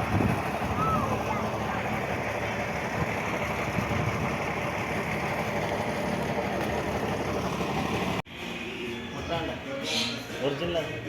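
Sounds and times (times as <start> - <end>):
motor vehicle running: 0.0 - 8.2.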